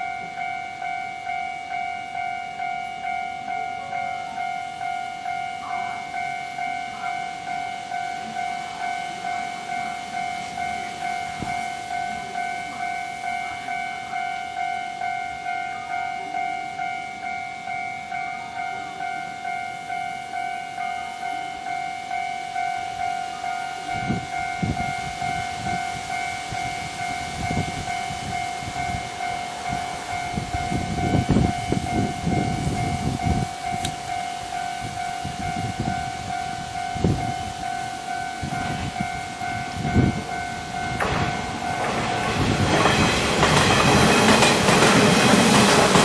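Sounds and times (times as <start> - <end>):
level-crossing warning bell clanging: 0.0 - 46.0
train passing rushing noise: 0.0 - 46.0
train wheels thumping over rail joints: 40.8 - 46.0.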